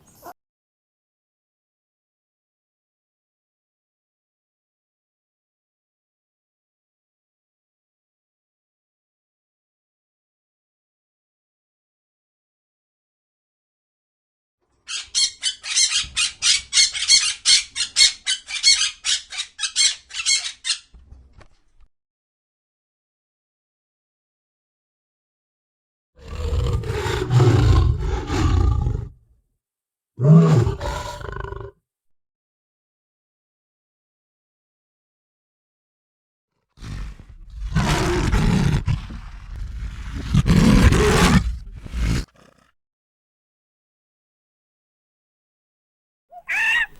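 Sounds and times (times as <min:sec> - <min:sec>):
bird squawking: 0:14.9 - 0:20.9, 0:46.3 - 0:46.9
large animal roaring: 0:26.2 - 0:29.2, 0:30.2 - 0:31.7, 0:36.8 - 0:42.7.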